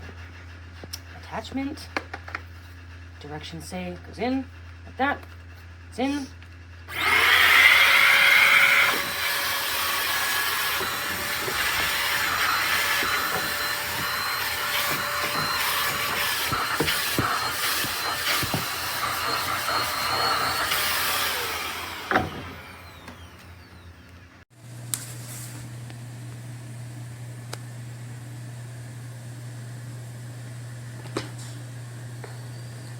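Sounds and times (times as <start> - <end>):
stick vacuum running: 6.9 - 24.2
vacuum motor winding down: 6.9 - 24.2.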